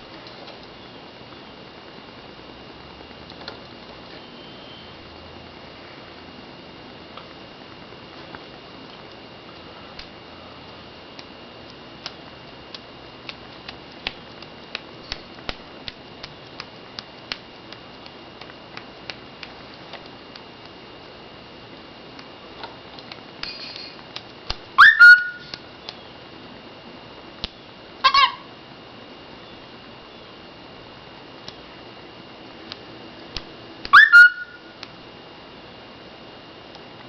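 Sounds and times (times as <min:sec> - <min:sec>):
loud whistled bird call: 0:04.2 - 0:05.0, 0:24.8 - 0:26.1, 0:28.0 - 0:28.4, 0:33.9 - 0:34.7.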